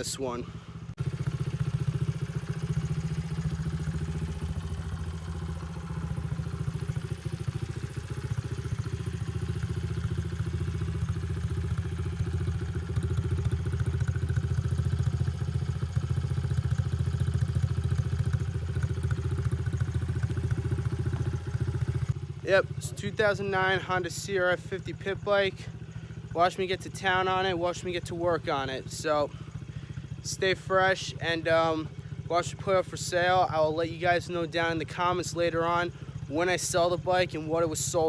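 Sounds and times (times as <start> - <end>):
small motorcycle engine running: 0.0 - 38.0.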